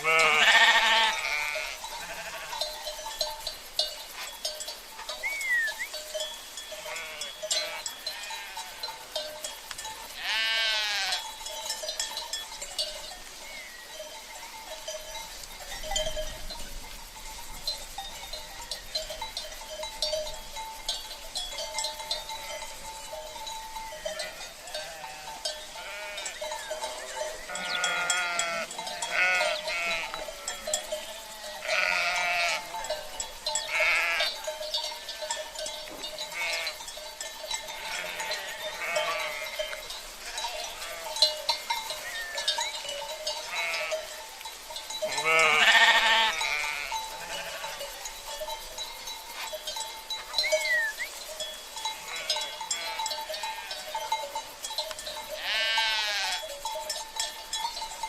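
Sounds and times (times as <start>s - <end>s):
sheep bleating: 0.0s - 2.6s, 6.8s - 8.9s, 10.2s - 11.2s, 24.1s - 34.4s, 36.2s - 36.8s, 37.8s - 41.2s, 43.5s - 44.0s, 45.1s - 47.8s, 51.9s - 54.0s, 55.4s - 56.4s
livestock bells ringing: 0.0s - 58.0s.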